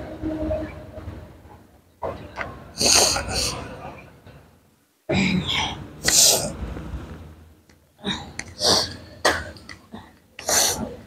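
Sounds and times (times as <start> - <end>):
people sneezing: 8.2 - 11.0.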